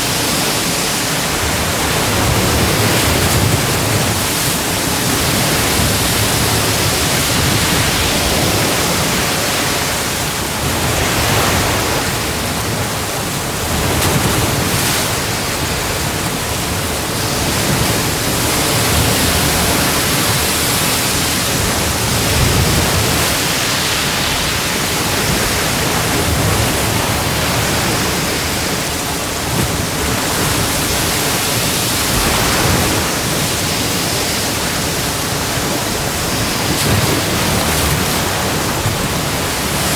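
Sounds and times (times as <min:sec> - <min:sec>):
ocean surf breaking: 0:00.0 - 0:39.9.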